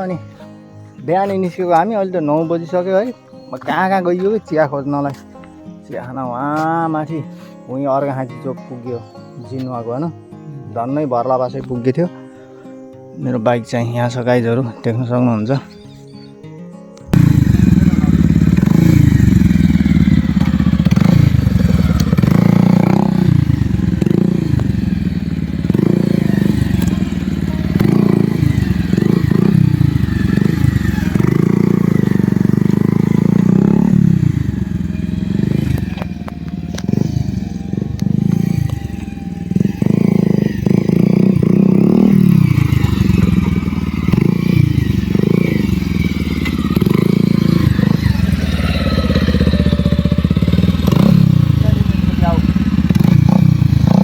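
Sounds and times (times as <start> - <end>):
motorcycle engine revving: 17.1 - 54.0.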